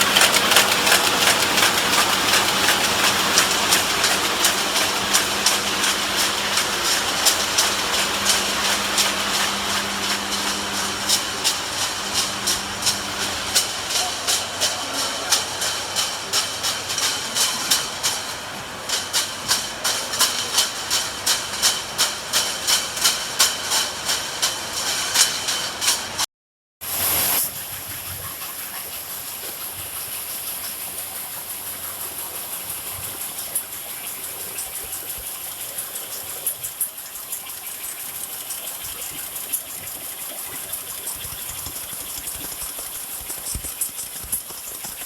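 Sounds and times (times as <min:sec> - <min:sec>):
machine clicking: 0:00.0 - 0:18.2, 0:36.0 - 0:45.0
welding machine hiss: 0:00.0 - 0:26.2, 0:26.8 - 0:45.0.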